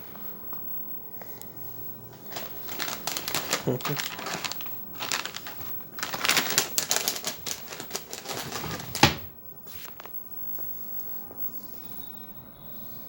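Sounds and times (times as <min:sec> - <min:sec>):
cat rummaging with clicks and rustles: 0:02.1 - 0:10.1.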